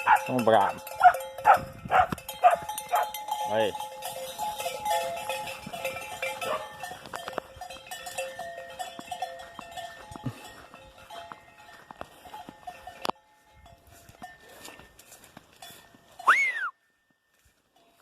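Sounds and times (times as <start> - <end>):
farm animals calling: 0.0 - 8.7.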